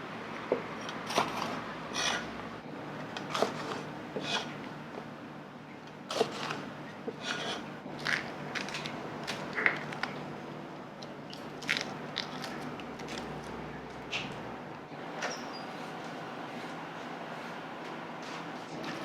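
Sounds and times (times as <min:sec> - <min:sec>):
tableware clicks and scrapes: 0:00.8 - 0:02.3, 0:07.2 - 0:07.7
crunching of fried food: 0:07.9 - 0:10.3, 0:11.0 - 0:13.6.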